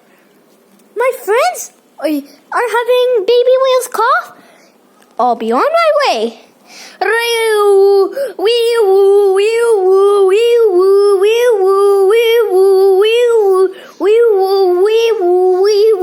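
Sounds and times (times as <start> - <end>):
child singing wordless tune: 1.0 - 4.4, 7.0 - 16.0.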